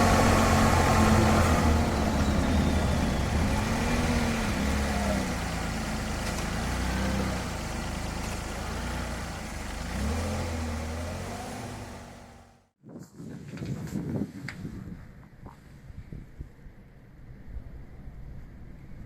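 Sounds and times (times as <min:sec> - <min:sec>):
van engine revving: 0:00.0 - 0:12.7
road rumble: 0:00.0 - 0:12.8.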